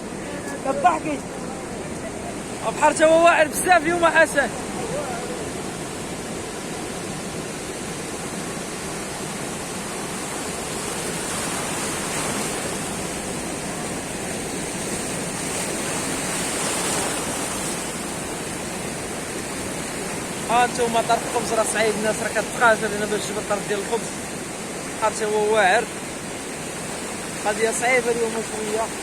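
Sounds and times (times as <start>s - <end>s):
rough sea surf rushing: 0.0s - 29.0s.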